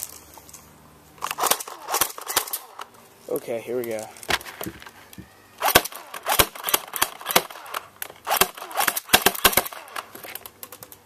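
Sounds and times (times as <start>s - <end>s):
airsoft gun single shots: 5.6s - 10.1s.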